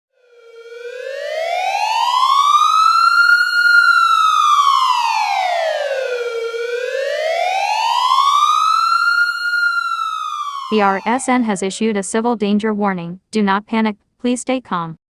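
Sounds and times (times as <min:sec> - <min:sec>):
warning siren wailing: 0:00.1 - 0:12.2.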